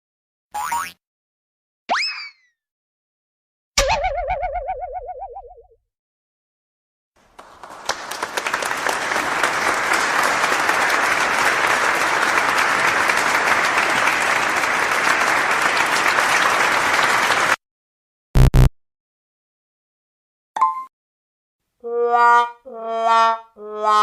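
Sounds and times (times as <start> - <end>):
crowd applauding: 7.2 - 17.6.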